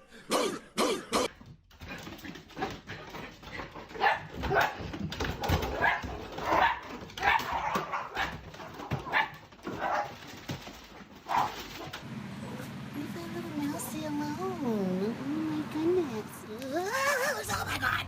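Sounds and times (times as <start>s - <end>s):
dog barking: 3.9s - 10.4s, 11.2s - 12.7s.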